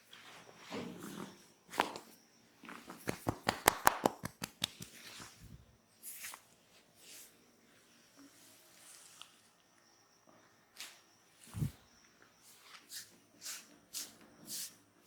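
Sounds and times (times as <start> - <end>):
hands brushing over skin: 2.9 - 6.4
hand slap on skin: 3.0 - 5.2.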